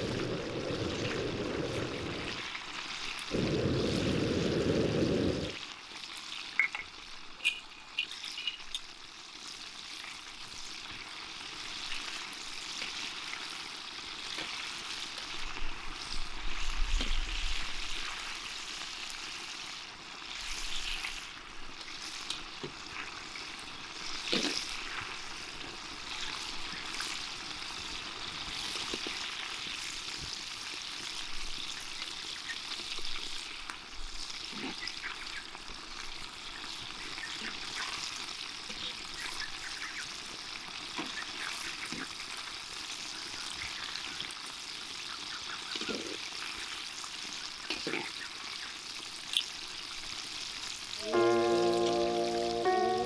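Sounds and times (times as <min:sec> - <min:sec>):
oil popping and crackling: 0:00.0 - 0:09.5
chicken deep-frying in oil: 0:00.0 - 0:53.0.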